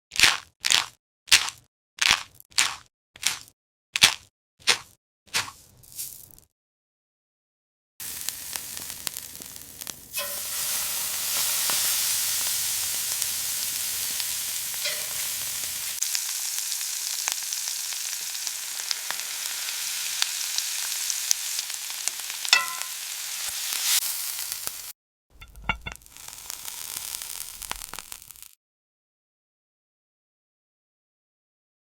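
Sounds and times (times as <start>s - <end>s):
steak sizzling in a pan: 8.0s - 24.9s, 25.7s - 28.6s.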